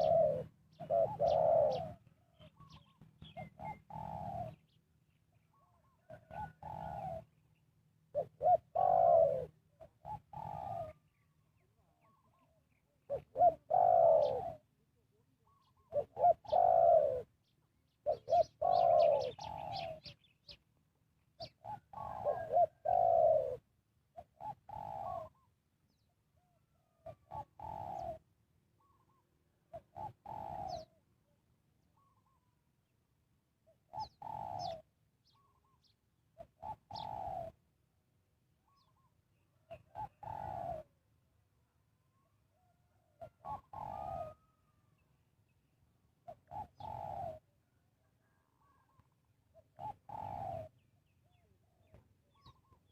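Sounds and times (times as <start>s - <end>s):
dove cooing: 0.0s - 20.6s, 21.4s - 31.1s, 33.6s - 37.7s, 38.6s - 41.0s, 42.2s - 45.0s, 46.2s - 52.9s
small bird chirping: 33.9s - 37.5s.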